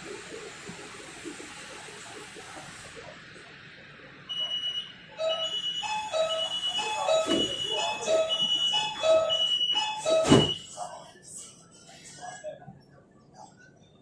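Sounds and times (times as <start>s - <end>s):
train door warning chime: 4.3s - 10.8s.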